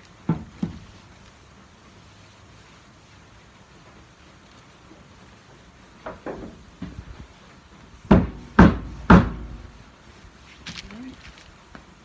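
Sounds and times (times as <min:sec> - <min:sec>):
soft knocks: 0:06.0 - 0:07.0, 0:08.1 - 0:09.8
loud sharp knocks: 0:08.1 - 0:09.8.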